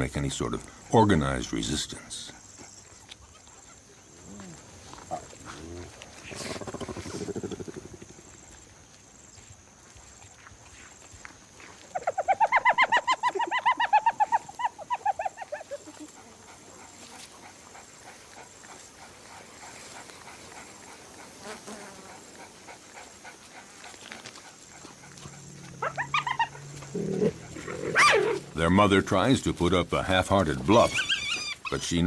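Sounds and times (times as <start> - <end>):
animal yelping calls: 11.9 - 16.9, 25.6 - 28.6, 30.7 - 31.8.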